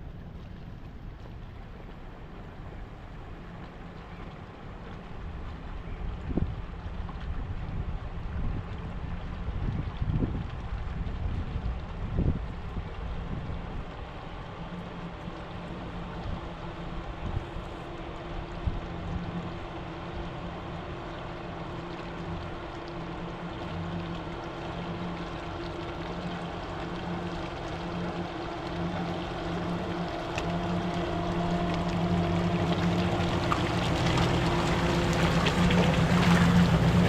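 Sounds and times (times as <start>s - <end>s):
water splashing and sloshing: 0.0s - 37.0s
vehicle engine running: 25.2s - 37.0s.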